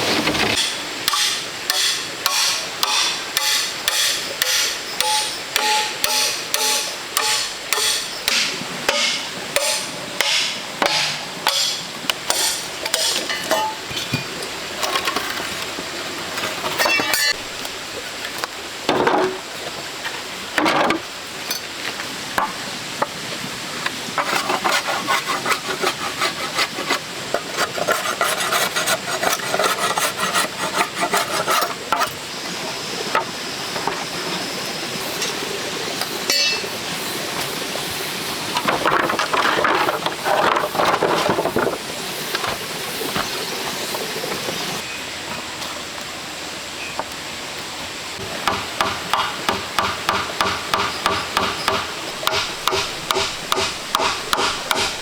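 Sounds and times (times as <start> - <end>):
rubbing and scraping: 0.0 - 0.8, 24.2 - 32.2, 38.6 - 42.6, 49.8 - 55.0
hand tool striking: 0.6 - 14.2, 36.3 - 36.7, 48.3 - 55.0
scattered knocks: 48.4 - 55.0.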